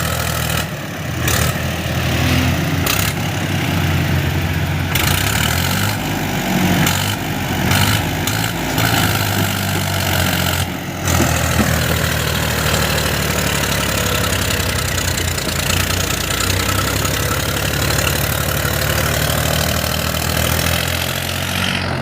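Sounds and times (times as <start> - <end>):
heavy diesel engine droning: 0.0 - 22.0.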